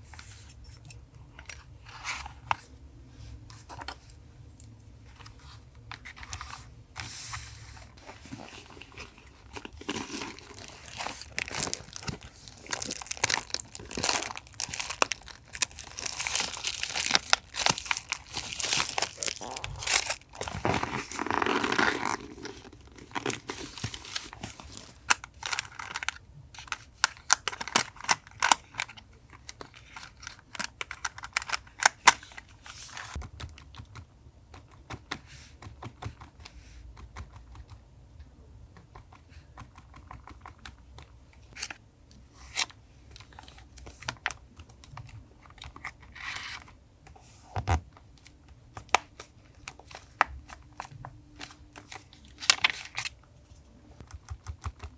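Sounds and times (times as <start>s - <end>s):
paper rustling: 5.1s - 26.1s.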